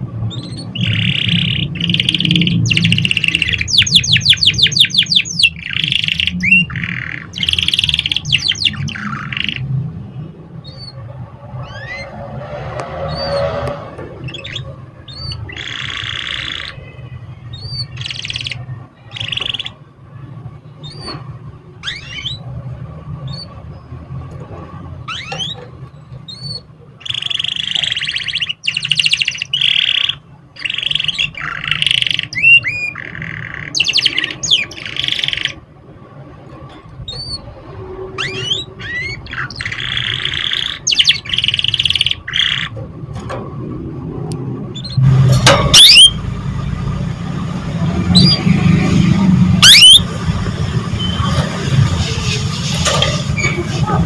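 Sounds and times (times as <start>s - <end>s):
canary singing trills: 0.3s - 9.9s, 10.6s - 12.3s, 14.2s - 19.9s, 20.7s - 21.2s, 21.8s - 22.6s, 23.2s - 24.0s, 25.0s - 35.6s, 37.1s - 42.8s, 44.7s - 46.3s, 47.9s - 50.1s.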